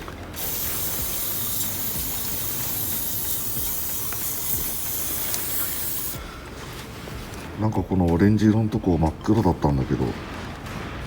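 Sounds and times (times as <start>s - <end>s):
aerosol spray hissing: 0.4s - 6.2s.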